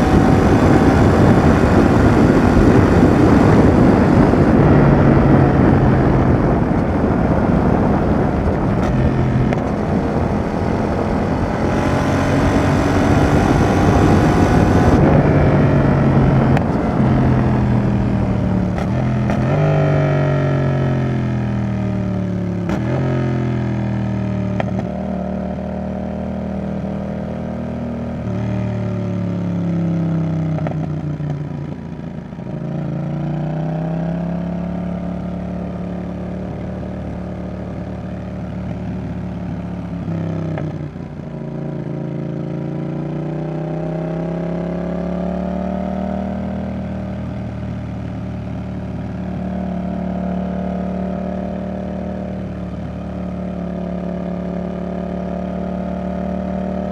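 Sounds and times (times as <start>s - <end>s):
motorcycle engine revving: 0.0s - 56.9s.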